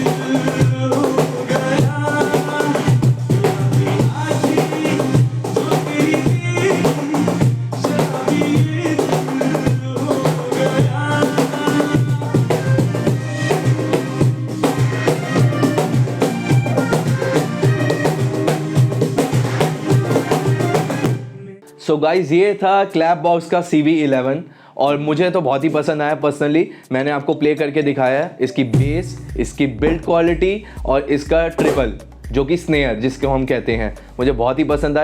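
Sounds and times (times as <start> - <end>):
drum and percussion hits: 0.0 - 21.3, 28.8 - 35.0
pitched backing music: 0.0 - 26.2, 27.4 - 35.0.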